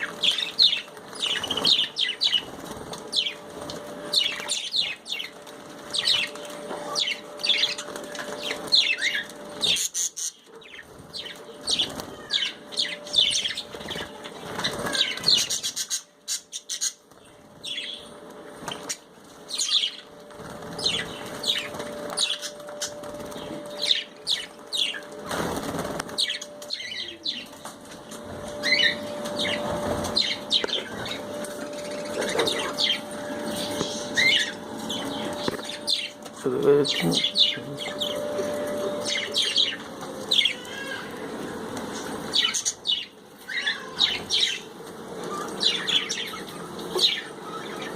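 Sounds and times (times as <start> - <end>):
budgerigars chirping: 28.6 - 40.6.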